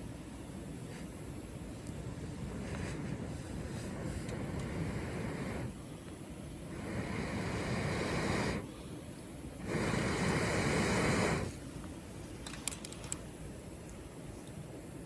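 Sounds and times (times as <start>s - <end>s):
rushes of air noise: 1.1s - 8.7s, 9.5s - 11.6s.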